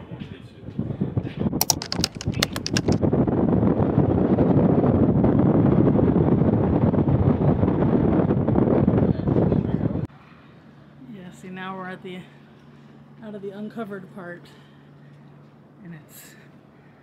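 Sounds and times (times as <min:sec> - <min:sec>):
wind buffeting microphone: 0:00.0 - 0:10.1
sharp clicks: 0:01.6 - 0:03.0.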